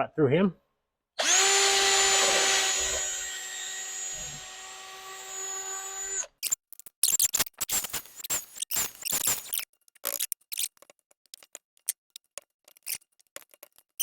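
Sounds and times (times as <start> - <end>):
electric drill drilling: 1.2 - 6.4
clicks and scrapes: 6.2 - 14.0.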